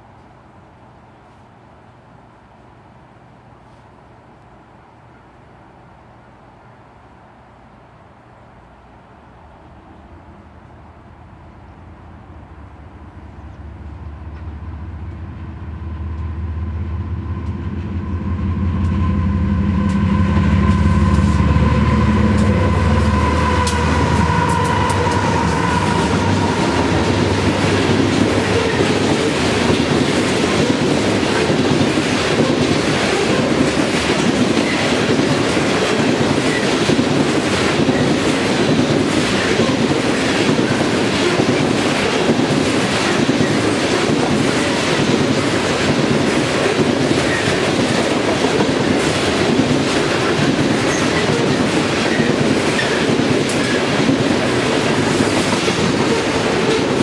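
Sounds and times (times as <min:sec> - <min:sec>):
train cars rumbling: 0:09.8 - 0:57.0
train wheels clicking on rails: 0:14.2 - 0:57.0
train horn: 0:17.2 - 0:29.7.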